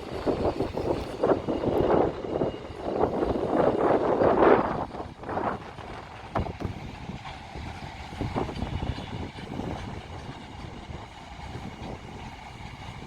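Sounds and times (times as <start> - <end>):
train rumble: 0.0 - 13.0
wheels knocking on rail: 5.8 - 12.1.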